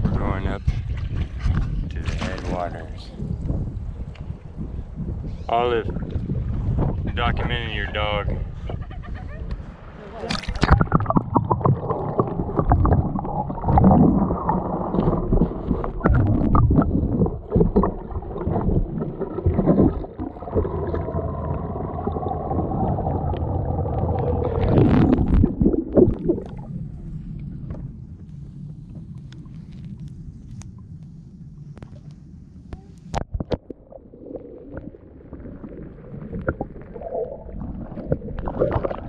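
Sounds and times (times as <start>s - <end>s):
muffled rumble: 0.0s - 39.0s
water splashing against kayak: 9.6s - 30.8s, 33.1s - 39.0s.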